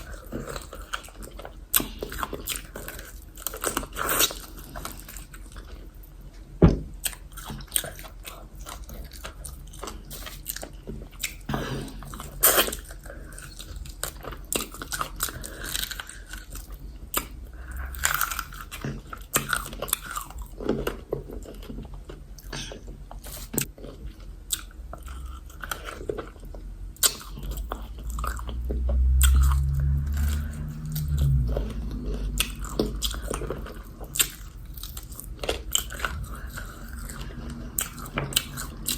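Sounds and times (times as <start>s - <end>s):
person chewing with wet smacks: 0.0s - 6.3s, 6.9s - 38.9s
low rumble: 26.6s - 38.9s.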